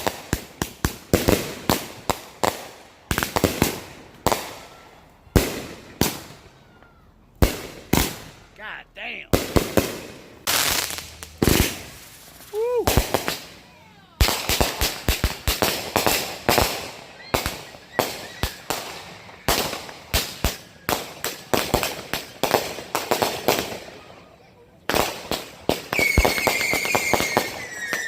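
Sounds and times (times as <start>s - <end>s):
fireworks banging: 7.4s - 13.6s.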